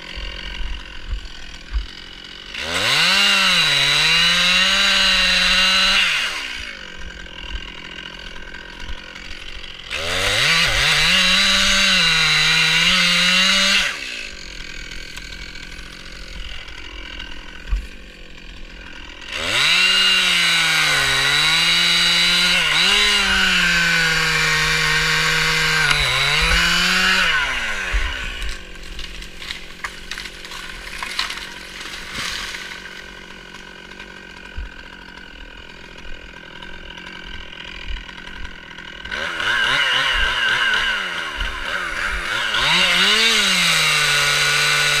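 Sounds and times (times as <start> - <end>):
chainsaw idling: 0.0 - 45.0
chainsaw sawing wood: 0.0 - 45.0.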